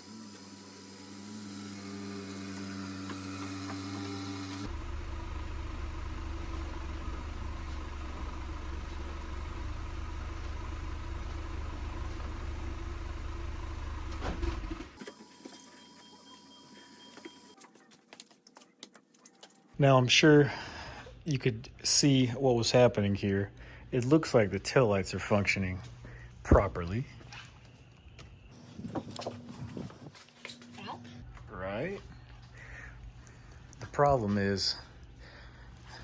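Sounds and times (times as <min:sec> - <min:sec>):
car engine idling: 0:04.6 - 0:15.0.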